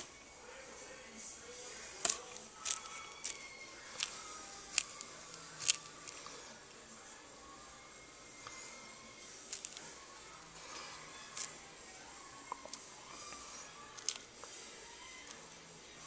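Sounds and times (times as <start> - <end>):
gecko crunching insect: 1.7 - 6.6, 9.3 - 11.7.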